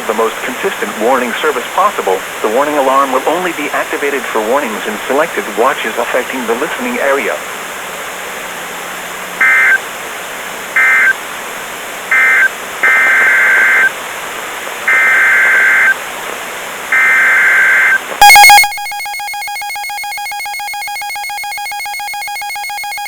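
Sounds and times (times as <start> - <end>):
buzzy digital data bursts: 12.1 - 13.9, 14.9 - 16.0, 16.9 - 23.0.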